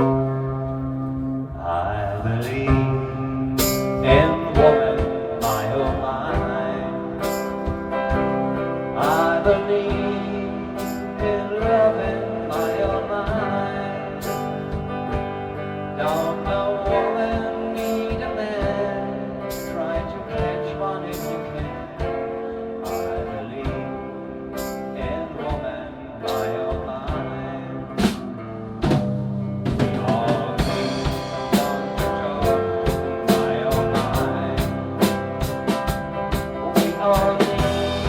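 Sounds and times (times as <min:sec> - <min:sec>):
rock band playing: 0:00.0 - 0:38.0
drum or cymbal strokes: 0:28.8 - 0:38.0.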